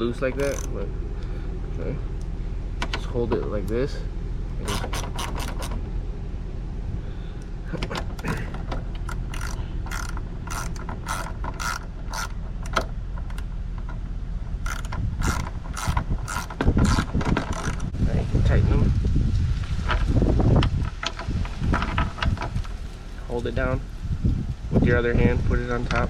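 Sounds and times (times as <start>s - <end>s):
ratchet wrench clicking: 0.4s - 0.8s, 4.6s - 5.8s, 8.2s - 13.4s, 14.6s - 17.9s.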